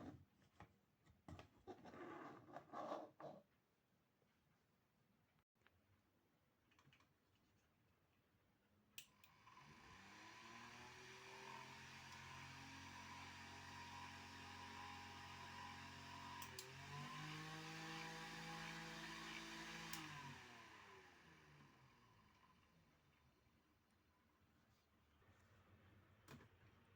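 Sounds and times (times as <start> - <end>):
electric fan whirring: 9.6 - 22.4.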